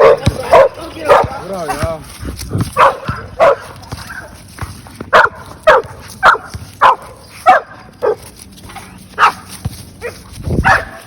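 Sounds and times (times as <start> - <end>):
dog barking: 0.0 - 1.9, 2.8 - 4.3, 5.1 - 8.3, 9.2 - 11.0.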